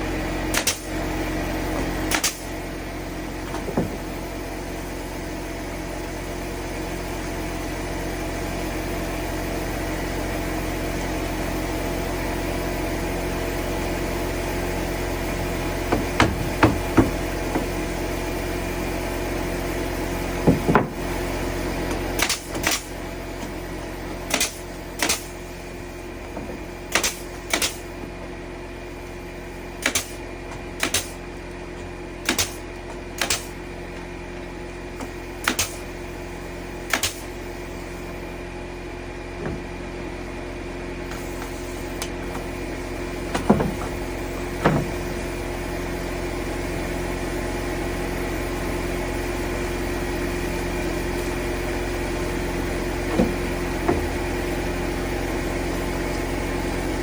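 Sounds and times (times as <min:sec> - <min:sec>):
motor hum: 0:00.0 - 0:57.0
hammer knocks: 0:15.9 - 0:17.8, 0:20.5 - 0:21.0.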